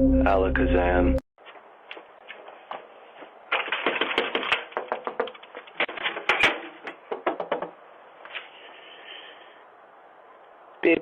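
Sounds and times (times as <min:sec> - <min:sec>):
rapid clicking and knocking: 0:03.5 - 0:07.8.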